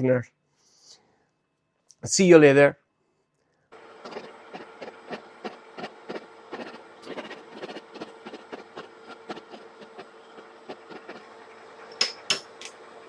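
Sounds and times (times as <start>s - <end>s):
milling machine hum: 3.8s - 13.0s.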